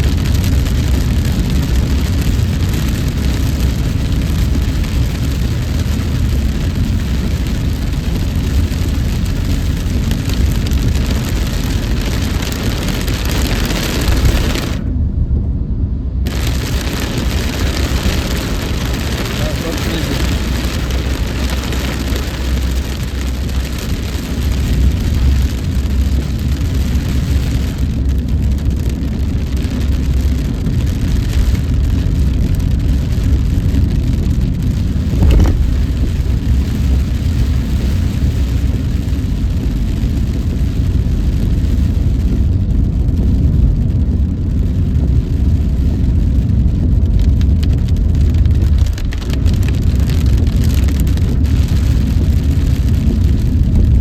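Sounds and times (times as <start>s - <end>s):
rain and wet tyres hissing: 0.0s - 15.0s, 16.1s - 54.0s
engine and road rumble: 0.0s - 54.0s
thump: 35.1s - 36.1s.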